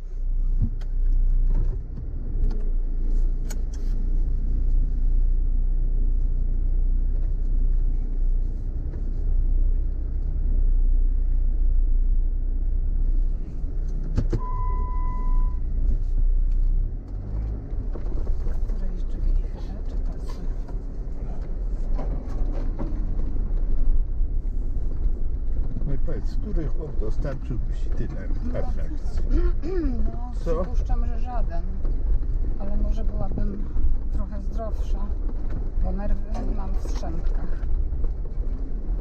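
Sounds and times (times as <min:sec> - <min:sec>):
car engine and tyre rumble: 0:00.0 - 0:39.0
electronic beep: 0:14.4 - 0:15.6.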